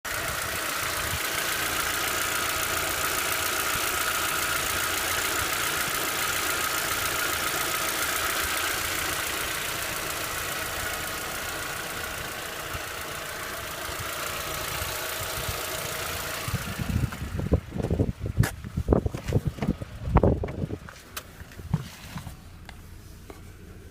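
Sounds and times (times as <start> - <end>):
car engine idling: 0.0 - 23.9
uneven low thumps: 16.4 - 22.4.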